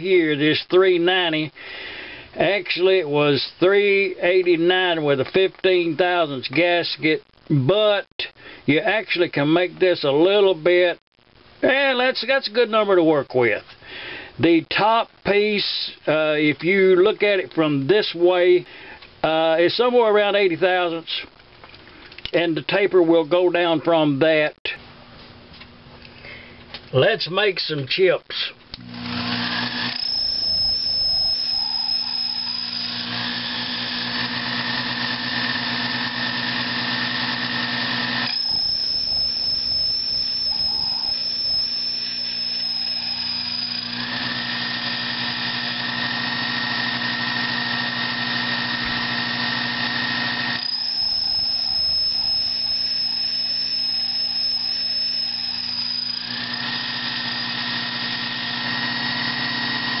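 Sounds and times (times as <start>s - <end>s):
lathe motor hum: 28.8s - 60.0s
high whine of lathe cutting: 28.9s - 60.0s.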